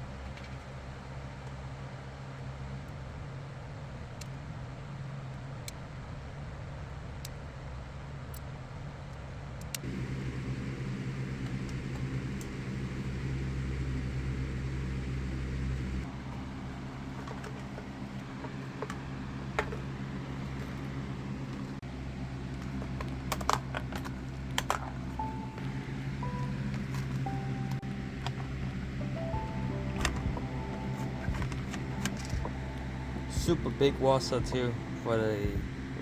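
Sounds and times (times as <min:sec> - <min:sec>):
background music with low chords: 0:18.2 - 0:36.0.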